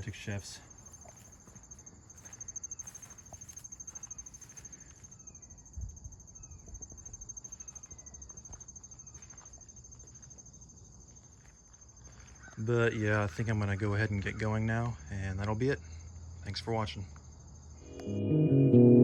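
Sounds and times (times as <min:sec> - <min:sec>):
insects trilling: 0:00.0 - 0:14.8
faint bird chirps: 0:00.3 - 0:09.6.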